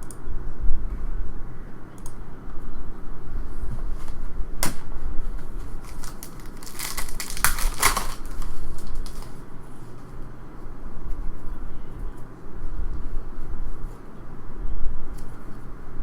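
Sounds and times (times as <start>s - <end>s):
plastic foil wrapper crinkling: 5.6s - 9.4s.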